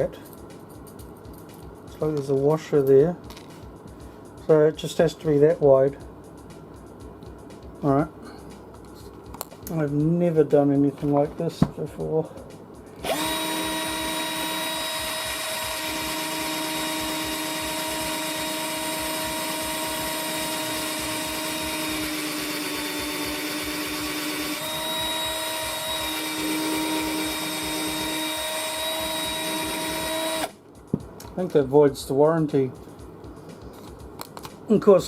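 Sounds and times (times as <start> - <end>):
drill motor whining: 13.0 - 30.6.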